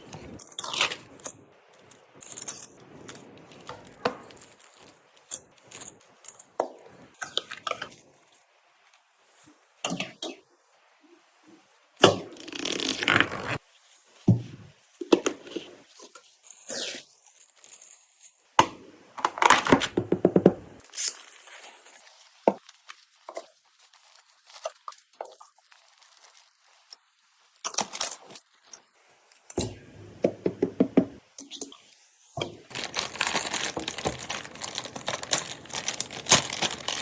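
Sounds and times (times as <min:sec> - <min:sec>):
packaging rustling and tearing: 0:00.1 - 0:08.3, 0:12.4 - 0:13.6, 0:15.5 - 0:18.5, 0:20.8 - 0:29.5, 0:32.4 - 0:37.0.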